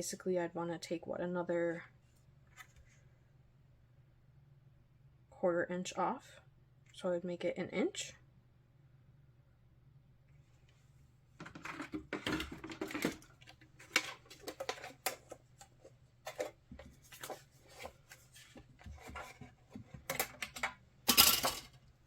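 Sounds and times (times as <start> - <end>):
paper rustling: 13.4 - 19.9.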